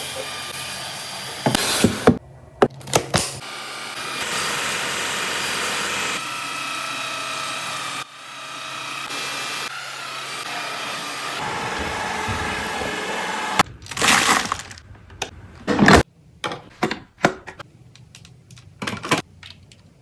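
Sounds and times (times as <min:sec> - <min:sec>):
vacuum cleaner motor running: 0:03.4 - 0:13.6
clicks and knocks: 0:14.8 - 0:17.6.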